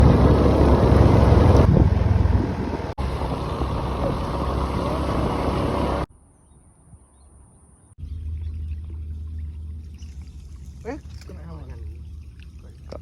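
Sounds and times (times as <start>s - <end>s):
motor engine running: 0.0s - 6.1s.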